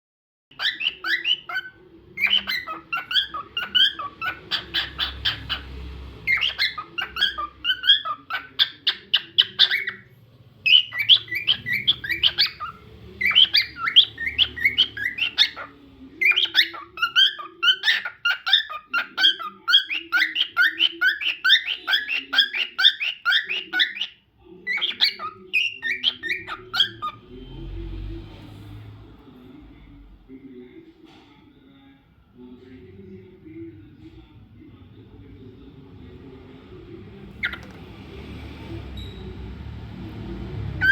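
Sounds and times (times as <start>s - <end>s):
cockatiel whistling chirps: 10.7s - 24.2s.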